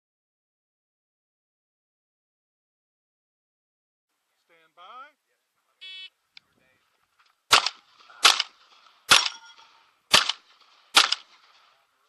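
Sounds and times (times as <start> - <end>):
shotgun shots with echo: 7.5 - 11.8.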